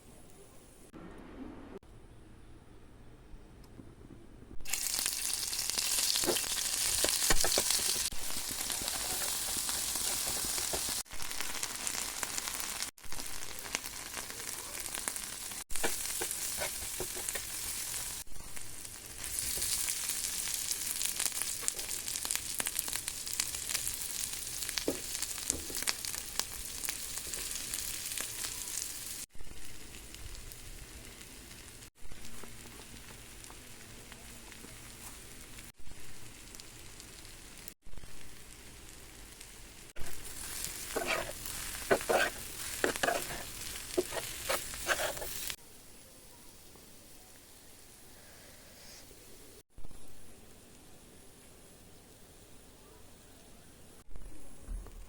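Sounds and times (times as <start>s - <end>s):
food sizzling in hot oil: 4.6s - 33.9s, 34.6s - 45.7s.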